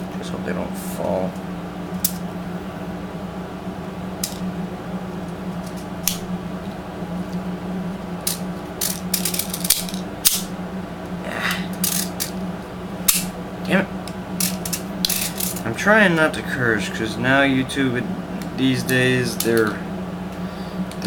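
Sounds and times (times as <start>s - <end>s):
steady low hum: 0.0s - 21.0s
pellets clicking and rattling: 8.3s - 10.4s.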